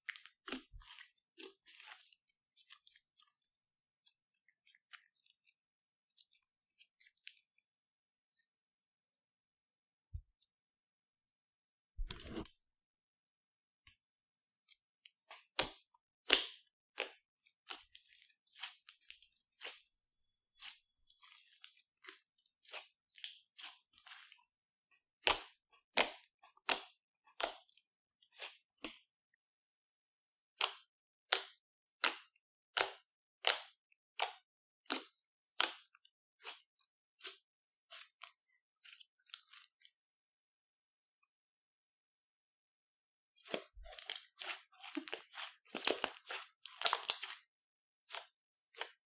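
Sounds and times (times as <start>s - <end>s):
slime squished by hand: 43.4s - 47.5s.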